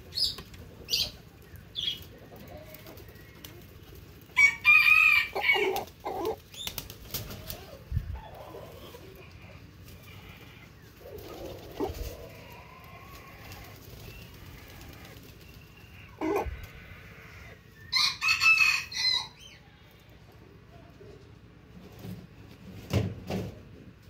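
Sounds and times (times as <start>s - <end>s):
chickens calling: 0.0s - 20.6s
rooster crowing: 4.4s - 6.3s, 16.2s - 19.4s.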